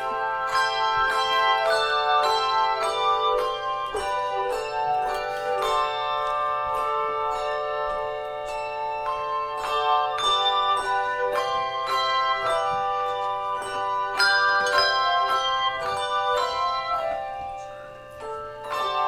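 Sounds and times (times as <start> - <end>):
handbell choir playing: 0.0 - 19.0.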